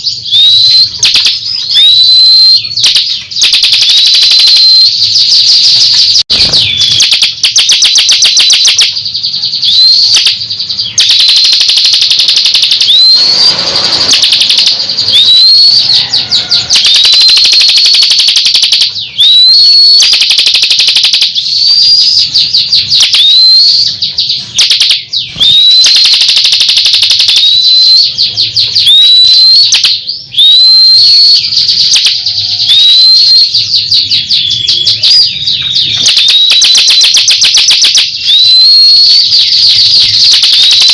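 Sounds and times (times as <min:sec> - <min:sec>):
songbird singing: 0:00.0 - 0:18.0, 0:26.4 - 0:36.6.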